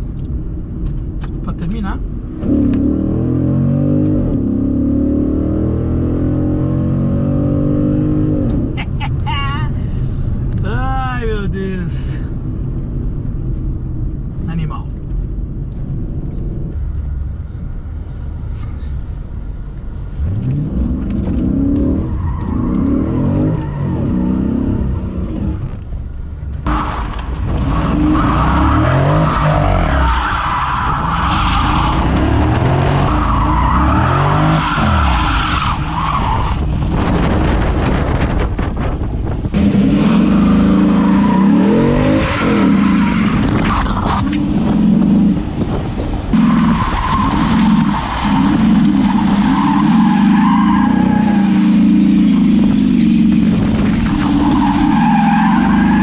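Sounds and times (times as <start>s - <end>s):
car engine revving hard: 39.6s - 43.6s.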